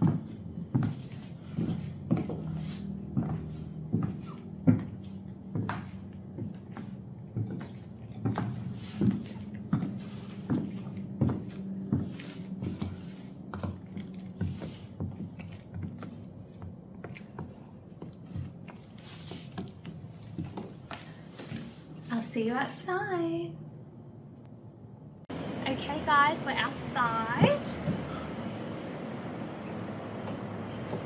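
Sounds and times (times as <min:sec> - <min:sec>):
footsteps in high heels: 0:00.0 - 0:22.3
steady low hum: 0:00.0 - 0:31.0.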